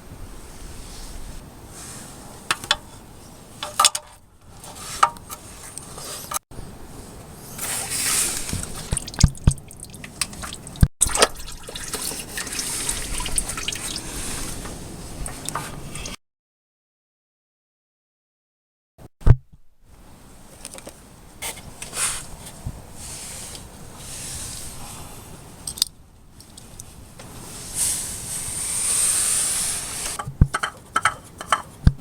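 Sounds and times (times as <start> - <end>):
oil running and dripping: 7.5 - 16.2.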